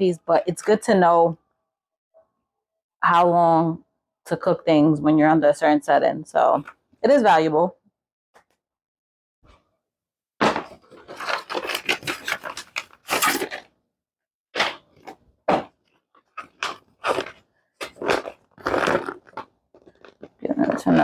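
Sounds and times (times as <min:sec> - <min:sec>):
packaging crinkling and rustling: 0:10.6 - 0:13.7.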